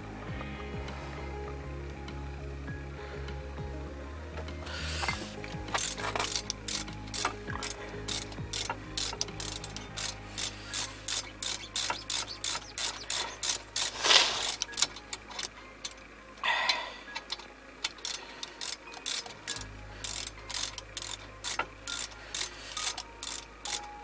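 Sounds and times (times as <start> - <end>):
hand ratchet clicking: 4.9 - 16.0, 17.9 - 24.0.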